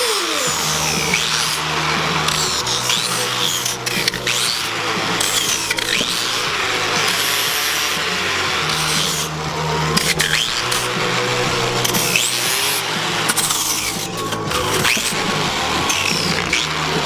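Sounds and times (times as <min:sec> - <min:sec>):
power tool motor humming: 0:00.0 - 0:17.0
sanding disc scraping metal: 0:00.0 - 0:17.0.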